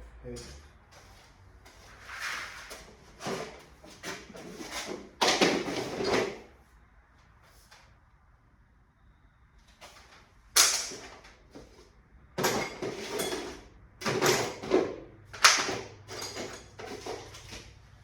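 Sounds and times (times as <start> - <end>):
hard parts knocking and clattering: 3.2 - 6.5, 12.3 - 17.7.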